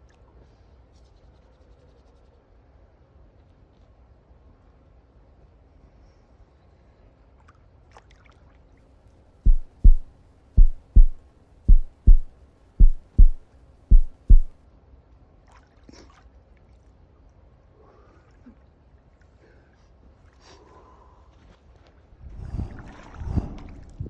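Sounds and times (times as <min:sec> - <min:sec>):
heartbeat thumps: 0:09.5 - 0:14.6.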